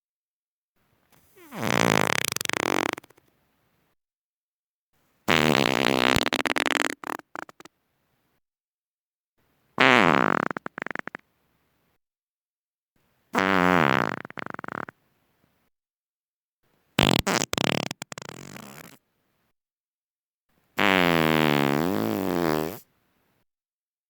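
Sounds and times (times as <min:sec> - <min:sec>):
farts sputtering: 0:01.4 - 0:03.2, 0:05.3 - 0:07.7, 0:09.8 - 0:11.2, 0:13.4 - 0:15.0, 0:17.0 - 0:19.0, 0:20.8 - 0:22.9.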